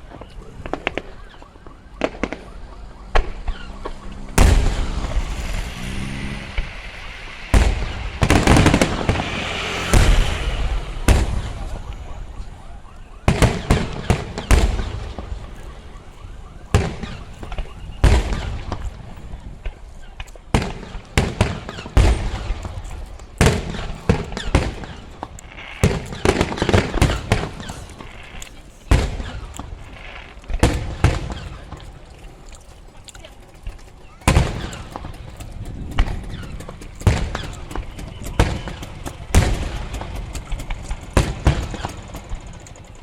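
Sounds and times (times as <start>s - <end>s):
fireworks bangs with echo: 0.0s - 32.1s, 33.6s - 43.0s.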